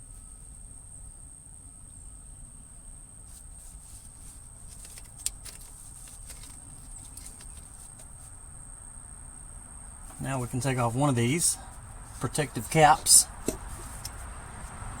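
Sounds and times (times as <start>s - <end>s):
clicks and taps on parts: 12.3s - 14.3s.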